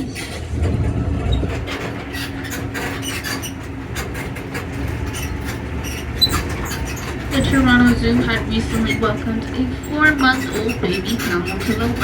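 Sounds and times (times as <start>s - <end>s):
tram cars rattling and clicking: 0.0s - 12.0s
tram rumbling: 0.0s - 12.0s.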